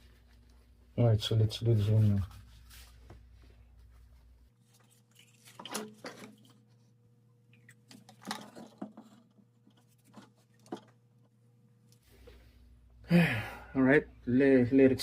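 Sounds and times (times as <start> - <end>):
plastic pipes scraping and knocking: 7.9 - 11.0.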